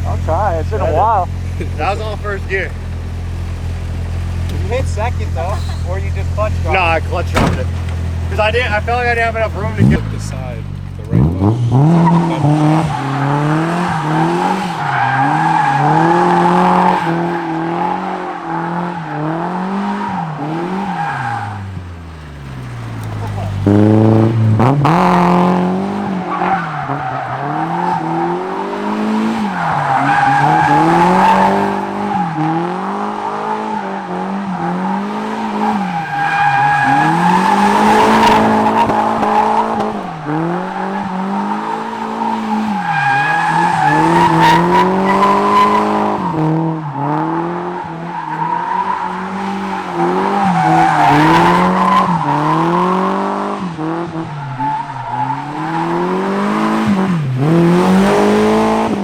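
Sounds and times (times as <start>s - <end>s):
tyres squealing: 0.0s - 17.1s, 19.9s - 25.4s, 29.4s - 46.4s, 48.1s - 53.2s
car engine revving: 0.0s - 59.0s.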